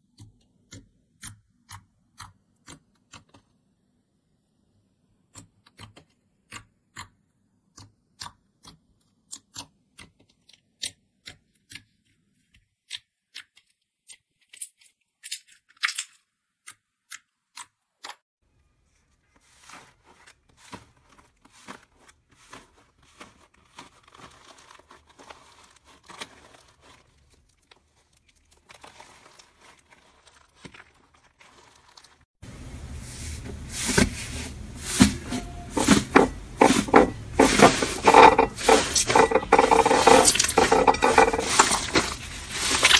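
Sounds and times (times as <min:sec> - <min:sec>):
slime crackling and crunching: 0:19.4 - 0:32.3, 0:36.3 - 0:42.9.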